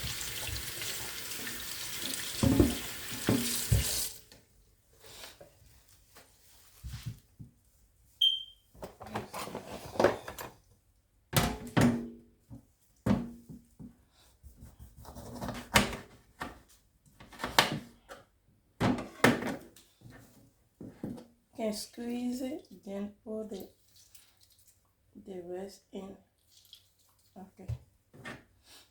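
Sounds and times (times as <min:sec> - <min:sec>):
knocks and clunks in kitchen: 0:02.3 - 0:04.0, 0:11.3 - 0:21.3.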